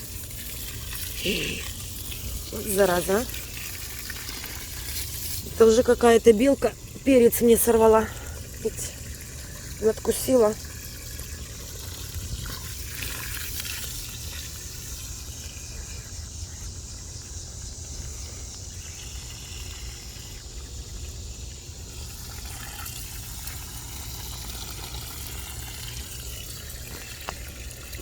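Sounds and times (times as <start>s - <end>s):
water running from hose: 0.0s - 28.0s.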